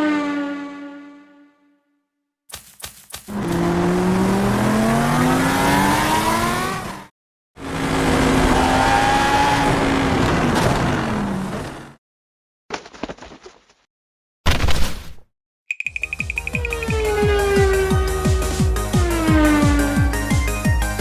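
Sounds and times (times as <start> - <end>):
racing car engine revving: 3.3 - 11.7, 16.8 - 20.3.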